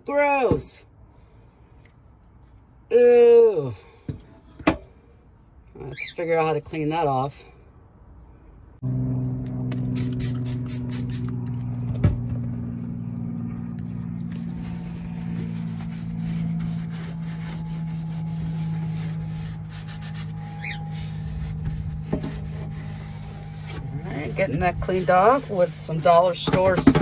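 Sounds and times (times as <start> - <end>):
low motor-like hum: 7.8 - 27.0
scrubbing and rubbing: 14.4 - 27.0.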